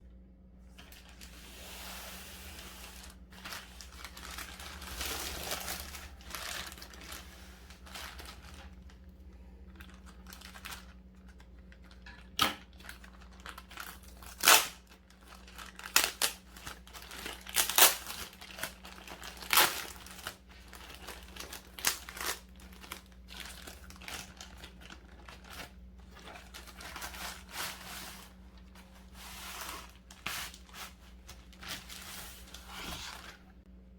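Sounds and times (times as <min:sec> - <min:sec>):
wrapping rustling and crinkling: 0:00.7 - 0:33.7
packaging ripping: 0:02.9 - 0:09.0, 0:09.8 - 0:33.4.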